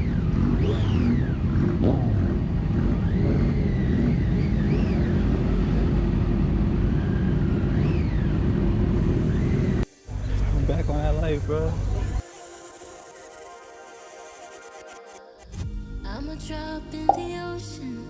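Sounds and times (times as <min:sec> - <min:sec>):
motorcycle engine running: 0:00.0 - 0:12.2.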